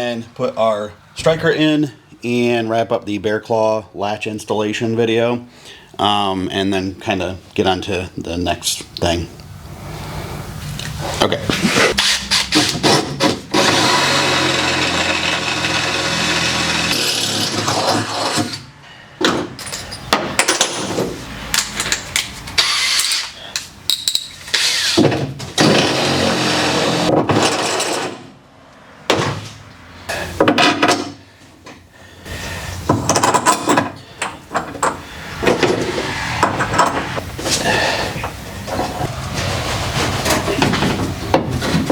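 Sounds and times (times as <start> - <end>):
power drill running: 13.6 - 17.4.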